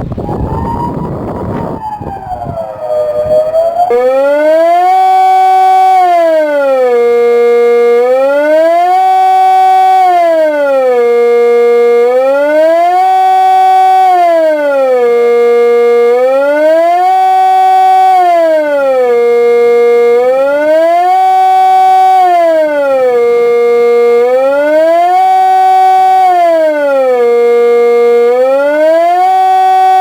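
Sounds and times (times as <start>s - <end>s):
wind on microphone: 0.0s - 4.8s
faint distant siren wailing: 0.0s - 30.0s
siren rising and falling: 0.0s - 30.0s.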